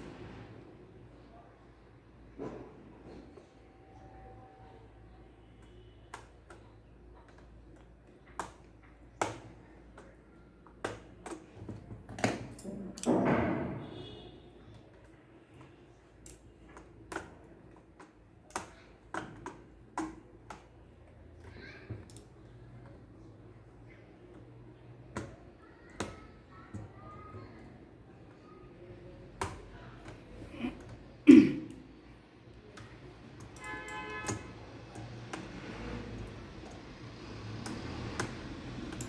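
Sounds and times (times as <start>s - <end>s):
laptop clicks and taps: 14.6s - 23.0s, 32.7s - 39.0s.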